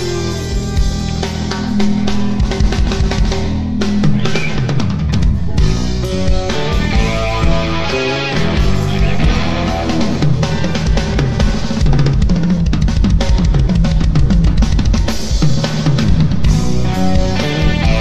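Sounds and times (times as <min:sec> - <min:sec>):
guitar notes: 0:00.0 - 0:12.2, 0:16.5 - 0:18.0
bass guitar line: 0:00.0 - 0:18.0
live instrumental rock band: 0:00.0 - 0:18.0.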